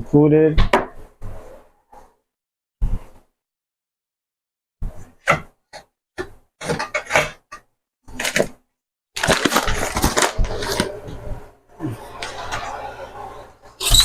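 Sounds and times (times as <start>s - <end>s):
containers and jars clattering: 6.6s - 8.6s, 9.2s - 10.9s.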